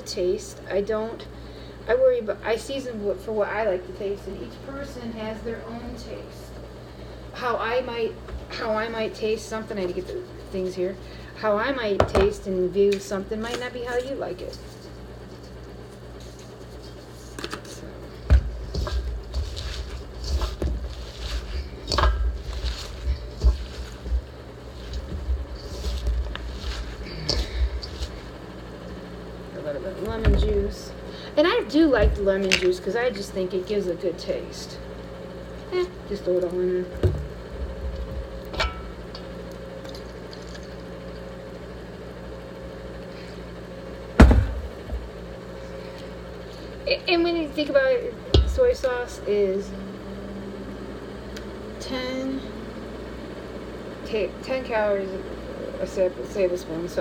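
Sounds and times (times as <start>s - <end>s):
steady low hum: 0.0s - 57.0s
heavy thump: 44.2s - 45.1s.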